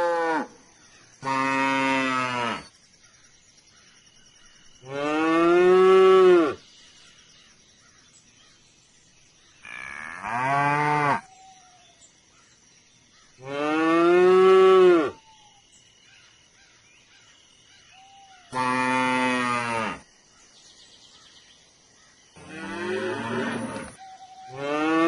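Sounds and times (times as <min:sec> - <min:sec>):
cow mooing: 0:18.5 - 0:20.0, 0:22.4 - 0:25.0.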